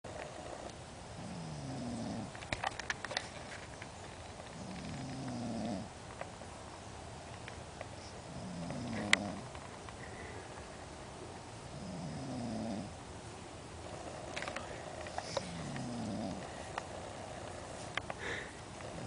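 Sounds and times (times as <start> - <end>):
person snoring: 11.7 - 12.9, 13.9 - 17.5.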